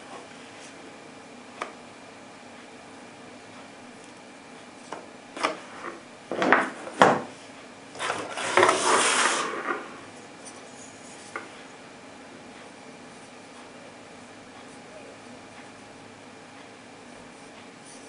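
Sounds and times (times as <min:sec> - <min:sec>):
packaging scrape or rustle: 0:08.0 - 0:09.9.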